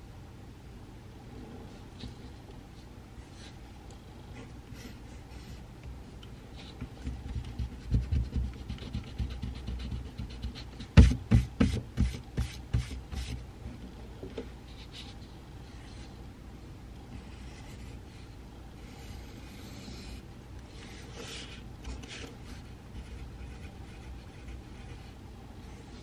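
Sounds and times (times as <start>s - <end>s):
pencil scratching on paper: 6.6s - 13.4s, 17.1s - 26.0s.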